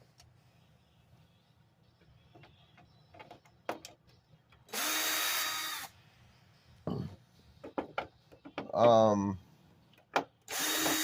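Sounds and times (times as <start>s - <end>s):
screw gun whining: 4.7s - 6.0s, 10.5s - 11.0s.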